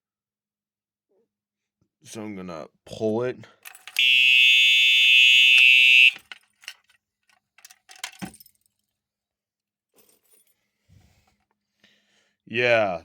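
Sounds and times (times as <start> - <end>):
keys jangling and clicking: 3.6 - 4.0, 7.6 - 8.8, 10.0 - 10.6
fire alarm horn steady tone: 4.0 - 6.2.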